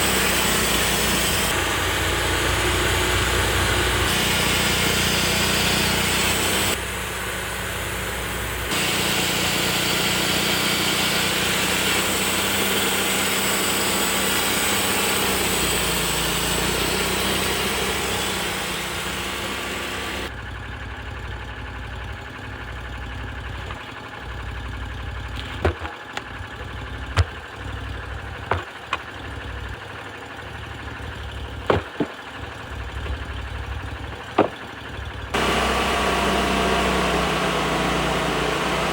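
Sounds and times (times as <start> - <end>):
saw blade cutting log: 0.0 - 20.3, 25.4 - 26.3, 28.4 - 29.1, 31.7 - 38.9
sawmill engine running: 0.0 - 38.9
sharp knocks: 25.4 - 26.0, 28.5 - 29.0, 31.7 - 32.4, 34.2 - 34.8.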